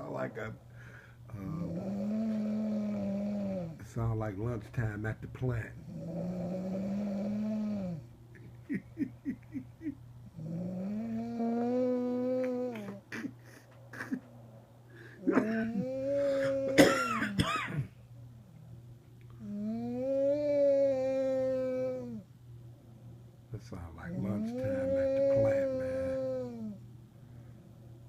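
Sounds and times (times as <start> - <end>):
woman snoring: 1.3 - 3.8, 5.9 - 8.0, 10.4 - 13.0, 15.2 - 16.8, 19.4 - 22.2, 24.1 - 26.8.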